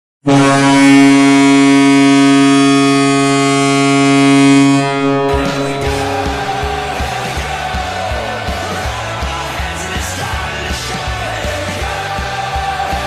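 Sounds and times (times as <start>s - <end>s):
goal horn blast: 0.2s - 8.5s
music with steady drum beat: 5.3s - 13.0s.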